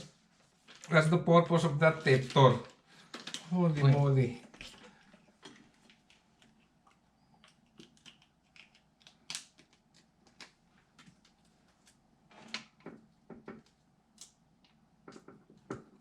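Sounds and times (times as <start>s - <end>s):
small parts clicking and tapping: 5.1s - 11.5s.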